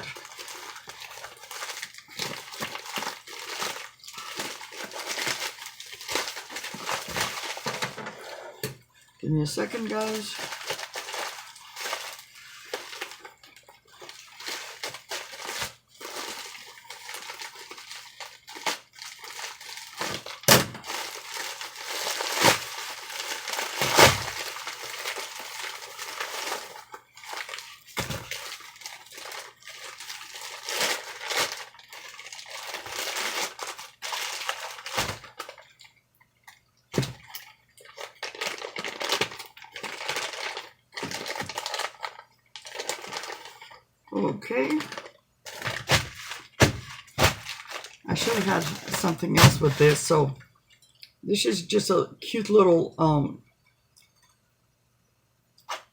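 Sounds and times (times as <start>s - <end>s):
packing material snapping: 0.0s - 8.0s, 14.0s - 35.7s, 37.0s - 43.6s, 44.6s - 50.2s
packing material crinkling: 0.0s - 8.7s, 9.4s - 50.3s.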